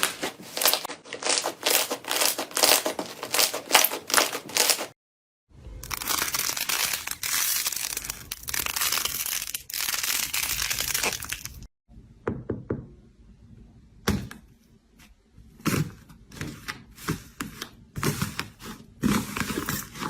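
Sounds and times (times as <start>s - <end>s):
slime crunching and crackling: 0.0s - 5.0s, 5.8s - 11.7s.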